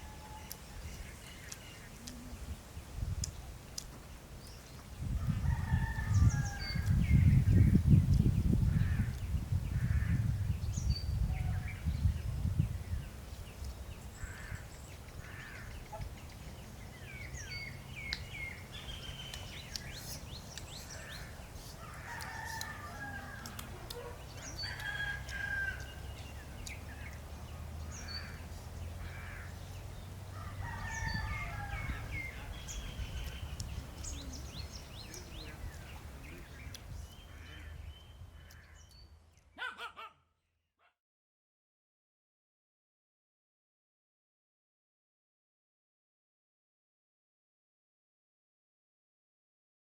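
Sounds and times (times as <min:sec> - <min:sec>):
rooster crowing: 0:00.0 - 0:00.5, 0:05.3 - 0:06.8, 0:21.9 - 0:23.6, 0:24.4 - 0:26.0, 0:30.3 - 0:32.2
small birds chirping: 0:00.0 - 0:39.7.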